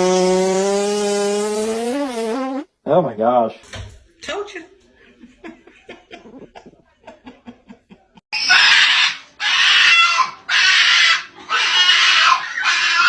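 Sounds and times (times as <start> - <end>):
animal squealing harshly: 8.3 - 13.0.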